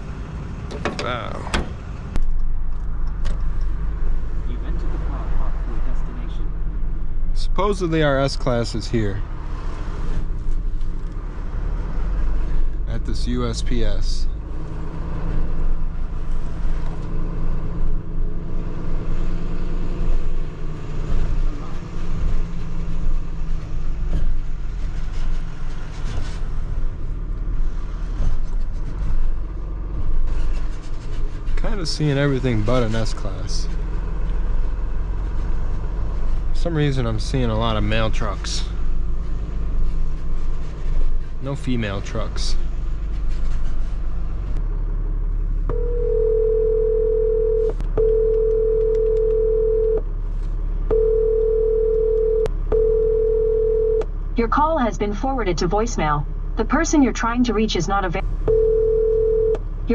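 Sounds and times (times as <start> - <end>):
truck engine low rumble: 0.0 - 59.9
low steady hum: 27.6 - 59.9
telephone ringback tone: 45.7 - 50.0, 50.9 - 54.0, 58.5 - 59.6.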